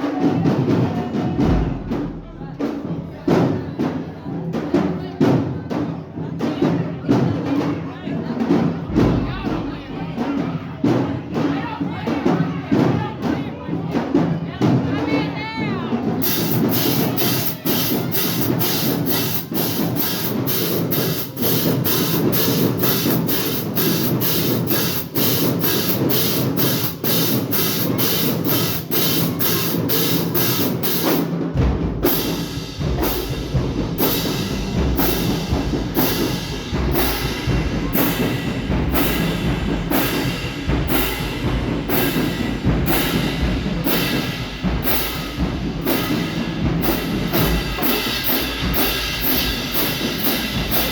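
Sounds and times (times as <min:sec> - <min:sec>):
bass drums: 0:08.9 - 0:10.0, 0:16.2 - 0:50.9
drumline sharp clicking strokes: 0:16.2 - 0:50.9.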